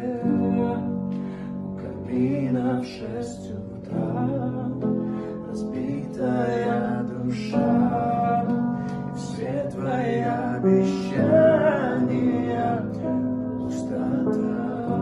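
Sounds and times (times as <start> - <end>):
pop song with vocals: 0.0 - 15.0.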